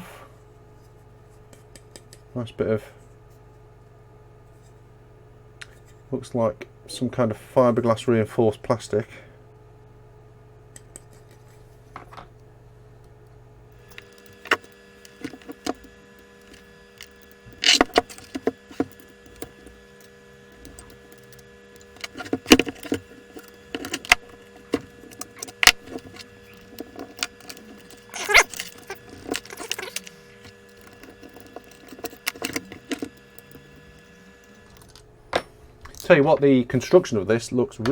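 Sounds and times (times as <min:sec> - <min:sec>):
faint steady hum: 0:00.0 - 0:37.9
small mechanical parts clattering: 0:13.8 - 0:37.0.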